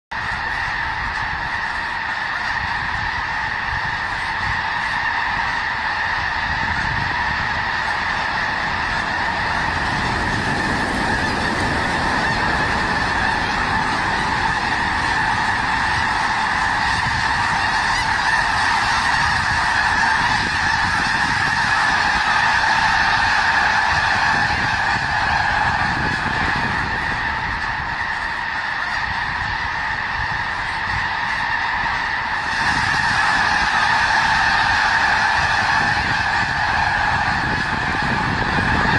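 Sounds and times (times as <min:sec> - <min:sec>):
flock of geese honking: 0:00.1 - 0:38.9.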